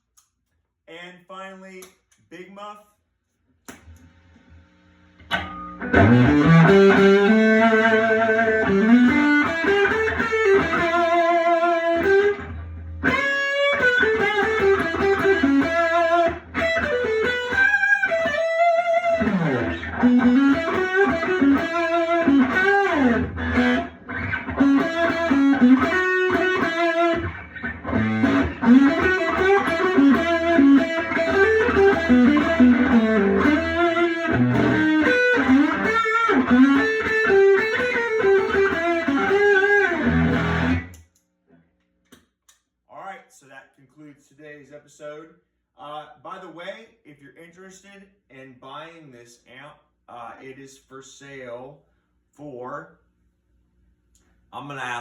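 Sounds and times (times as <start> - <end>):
electric guitar lead line: 5.3 - 41.0.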